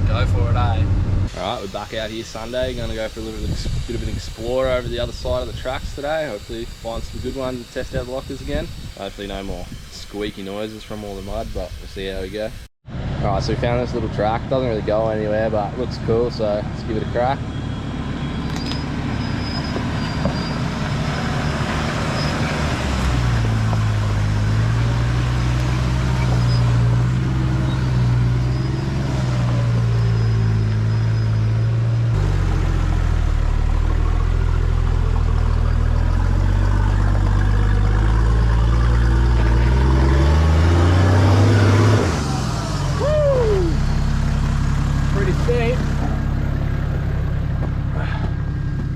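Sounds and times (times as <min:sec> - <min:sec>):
diesel engine pulling at low revs: 0:00.0 - 0:48.9
short falling squeak: 0:17.2 - 0:22.7, 0:25.7 - 0:31.8.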